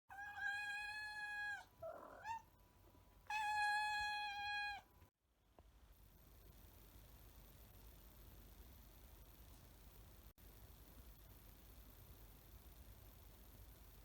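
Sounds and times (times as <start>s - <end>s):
cat chirp: 0.1s - 2.5s
cat meowing: 0.1s - 2.5s, 3.3s - 4.9s.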